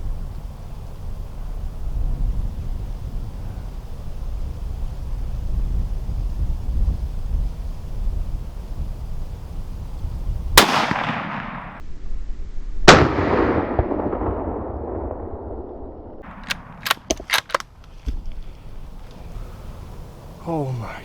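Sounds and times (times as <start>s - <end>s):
rifle shots echoing: 10.6s - 11.8s, 12.9s - 17.8s.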